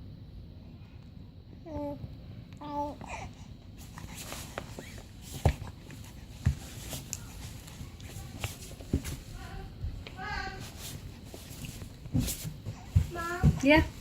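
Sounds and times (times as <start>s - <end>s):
soft rustling: 3.8s - 14.0s.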